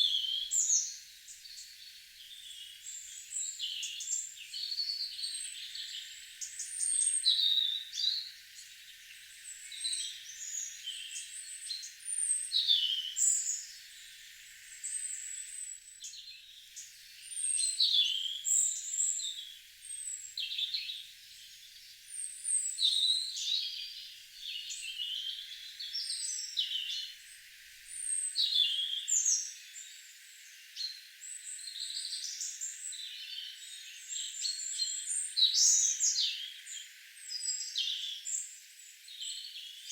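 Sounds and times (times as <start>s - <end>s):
songbirds singing and calling: 0.0s - 39.9s.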